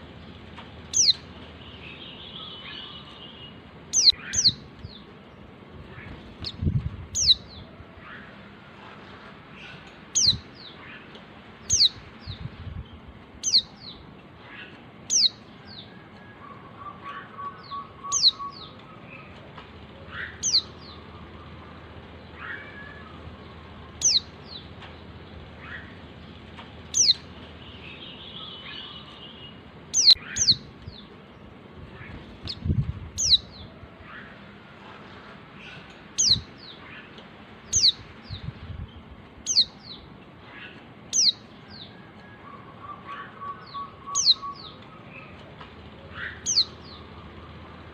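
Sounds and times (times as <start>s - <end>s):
soft background bird calls: 0.0s - 47.9s
bird trill: 0.9s - 5.1s, 5.9s - 8.3s, 9.6s - 12.0s, 13.4s - 19.4s, 20.0s - 24.7s, 26.9s - 31.1s, 31.9s - 34.4s, 35.6s - 37.1s, 37.7s - 38.4s, 39.4s - 45.4s, 46.1s - 47.9s
bird calling sharp downsweeping notes: 16.2s - 24.4s, 40.6s - 47.9s.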